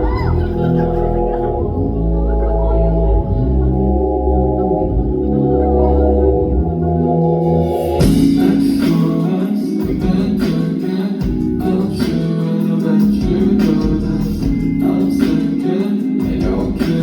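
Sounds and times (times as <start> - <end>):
live pop song over loudspeakers: 7.7 - 17.0.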